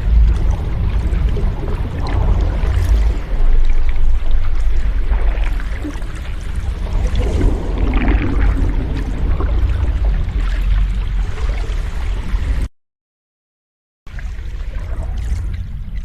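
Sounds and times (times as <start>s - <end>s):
ocean waves washing: 0.0s - 12.7s.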